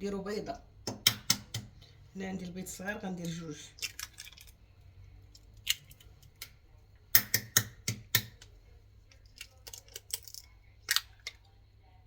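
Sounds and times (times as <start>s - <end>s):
eggs clicking against cooking pot: 0.8s - 1.8s, 3.7s - 4.6s, 5.3s - 8.5s, 9.1s - 11.4s.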